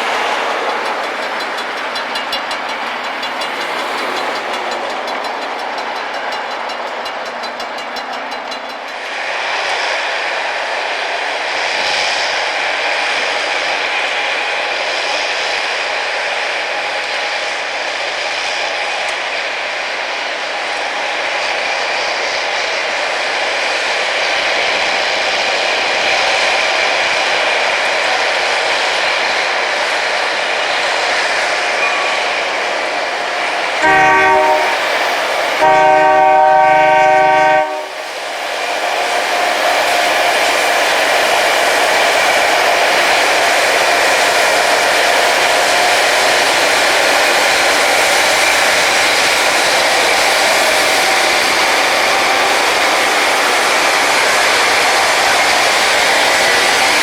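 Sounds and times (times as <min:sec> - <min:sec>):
rail grinding with high whine: 0:00.0 - 0:57.0
train horn blasts: 0:31.8 - 0:40.1.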